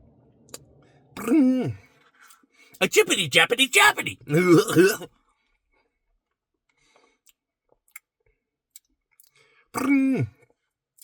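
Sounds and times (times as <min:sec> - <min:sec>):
man humming: 0:02.8 - 0:05.1
mouth clicks while eating: 0:07.2 - 0:10.0.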